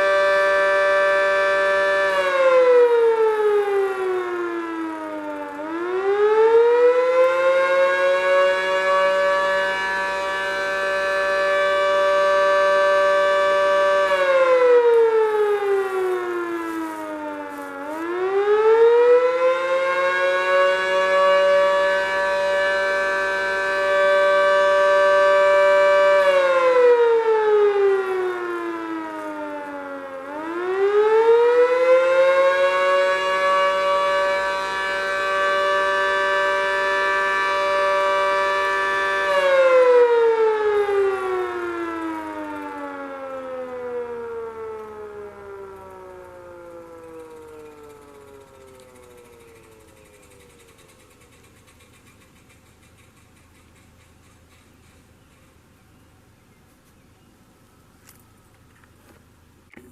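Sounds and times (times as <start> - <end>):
two-tone fire siren wailing: 0.0 - 51.6.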